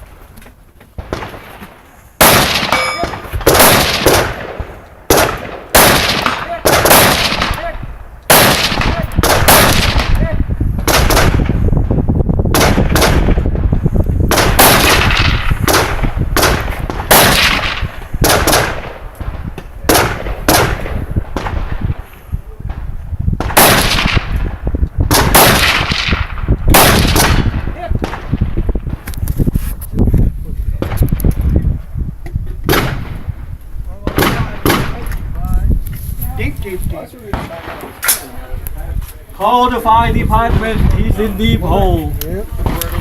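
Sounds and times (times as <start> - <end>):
rifle shots with echo: 2.2 - 11.6, 12.5 - 13.6, 14.3 - 22.1, 23.4 - 29.0, 34.0 - 35.0, 37.3 - 38.3.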